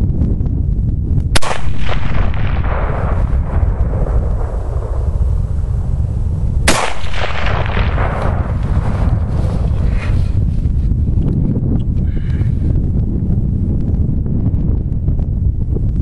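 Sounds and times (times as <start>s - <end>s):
wind rumbling on microphone: 0.0s - 16.0s
rifle shots with rolling echo: 1.3s - 9.9s.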